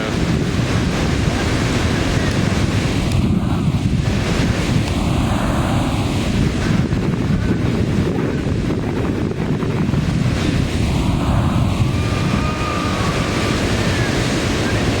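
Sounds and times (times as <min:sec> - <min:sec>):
rushing river water: 0:00.0 - 0:06.9, 0:10.0 - 0:15.0
wind buffeting microphone: 0:00.0 - 0:15.0.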